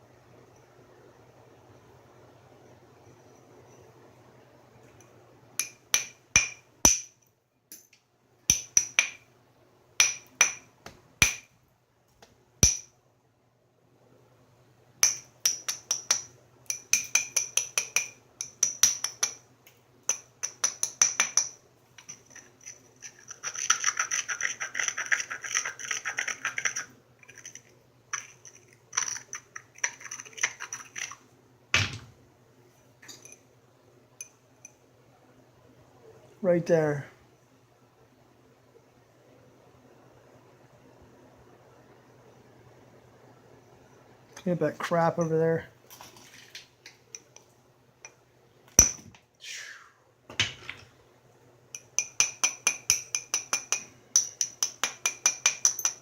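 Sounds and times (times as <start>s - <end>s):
antler tool tapping stone: 5.6s - 7.1s, 8.5s - 9.2s, 10.0s - 11.5s, 12.6s - 12.9s, 15.0s - 19.4s, 20.1s - 21.6s, 52.0s - 56.0s.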